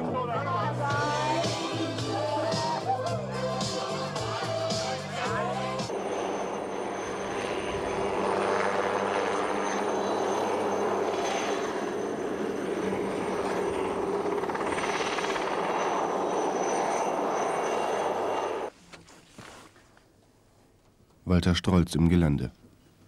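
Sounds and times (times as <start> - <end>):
high turbine whine: 0.9 - 18.7
helicopter rotor and engine: 1.0 - 18.7.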